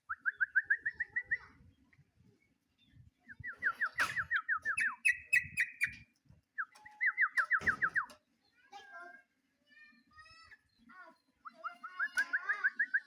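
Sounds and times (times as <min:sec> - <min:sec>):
bulbul calling: 0:03.4 - 0:06.0, 0:06.6 - 0:08.2.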